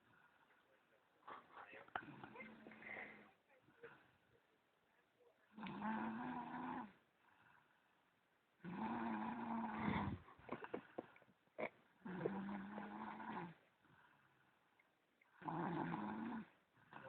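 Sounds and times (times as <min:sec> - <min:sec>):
person snoring: 0:08.6 - 0:11.0, 0:12.0 - 0:13.6, 0:15.4 - 0:17.0.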